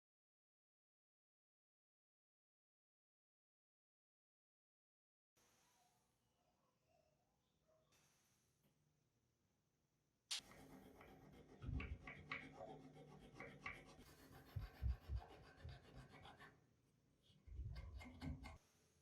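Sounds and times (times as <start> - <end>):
hand rubbing on metal: 10.3 - 16.5.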